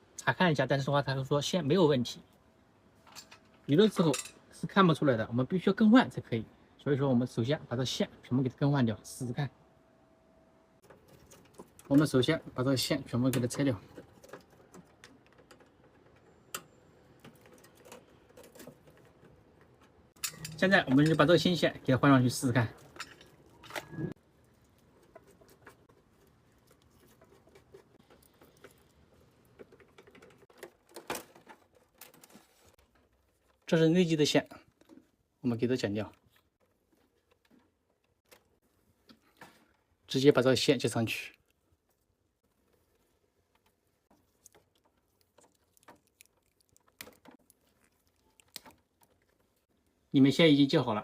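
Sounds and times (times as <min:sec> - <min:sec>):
faint cable clicks and rustles: 0:10.8 - 0:50.2.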